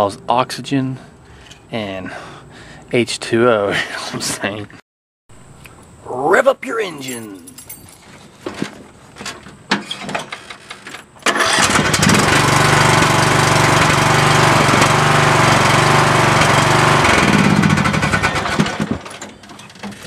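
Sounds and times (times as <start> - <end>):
riding lawnmower engine running: 11.2 - 20.0.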